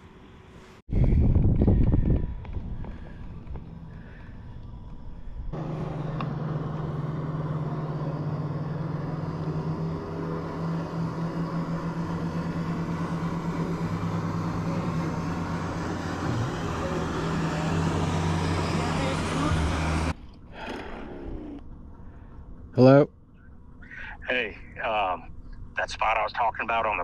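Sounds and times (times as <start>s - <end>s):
engine humming: 0.0s - 26.2s.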